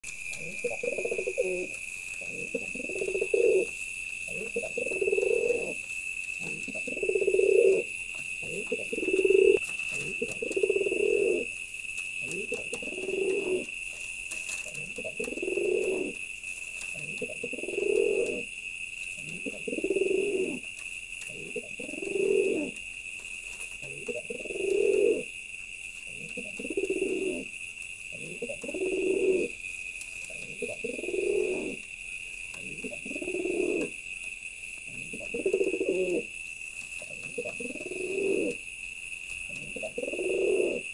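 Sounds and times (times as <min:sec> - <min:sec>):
pigeon cooing: 0:00.0 - 0:05.8, 0:06.4 - 0:11.5, 0:12.2 - 0:13.8, 0:14.4 - 0:16.2, 0:16.8 - 0:18.5, 0:19.2 - 0:22.8, 0:23.8 - 0:25.3, 0:26.0 - 0:27.5, 0:28.1 - 0:29.6, 0:30.2 - 0:31.8, 0:32.5 - 0:34.0, 0:34.9 - 0:36.3, 0:37.0 - 0:38.6, 0:39.4 - 0:40.9.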